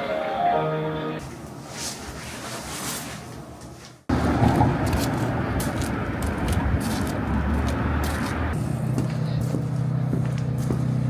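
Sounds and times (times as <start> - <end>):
moving vehicle rumbling: 4.1 - 11.0.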